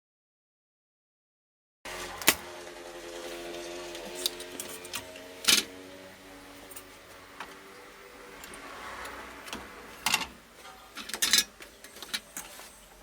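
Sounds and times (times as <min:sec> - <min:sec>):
desoldering clicks and metallic clatter: 0:03.5 - 0:13.0.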